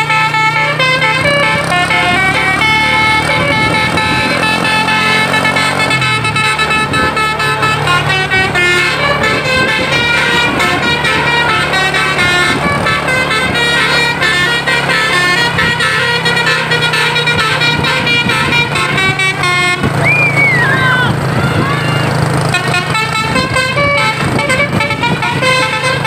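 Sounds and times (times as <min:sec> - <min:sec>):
bus engine running: 0:00.0 - 0:26.0
bus horn playing a melody: 0:00.0 - 0:26.0.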